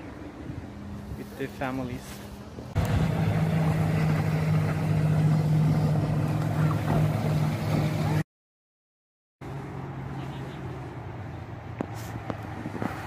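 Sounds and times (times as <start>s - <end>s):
motorboat engine humming: 0.0s - 8.2s.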